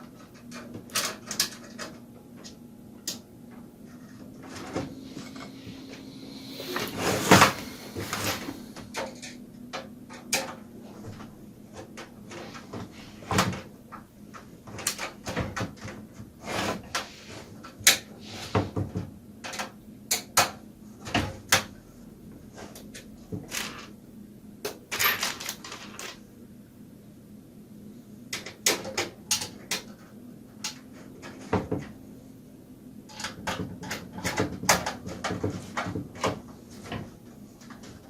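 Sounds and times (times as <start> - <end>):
clicks and knocks of computer parts: 0.0 - 3.2, 7.3 - 21.8, 24.6 - 26.2, 28.3 - 32.0, 33.1 - 38.0
faint steady hum: 0.0 - 38.0.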